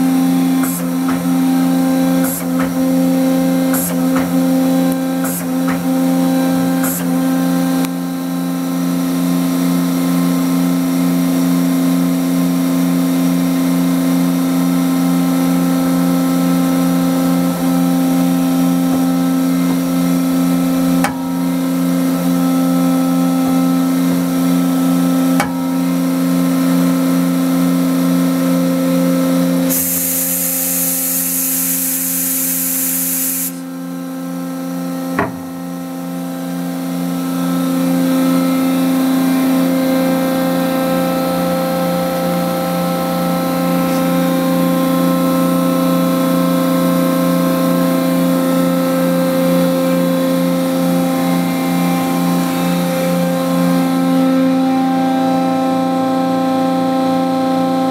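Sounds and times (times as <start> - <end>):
machine whine: 14.5 - 57.9
loud spray hiss: 29.7 - 33.6.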